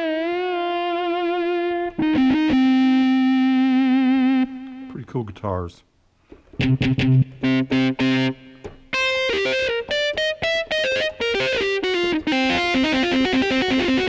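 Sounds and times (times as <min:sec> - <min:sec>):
synthesizer electric guitar chords and notes: 0:00.0 - 0:04.9, 0:06.6 - 0:14.0.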